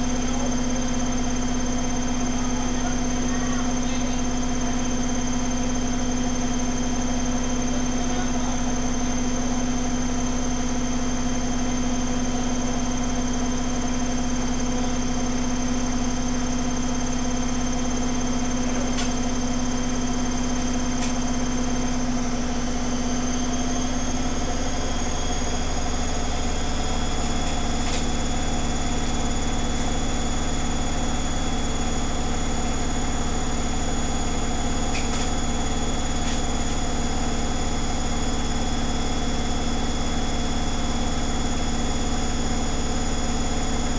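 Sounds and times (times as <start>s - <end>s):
washing machine spinning hum: 0.0s - 43.9s.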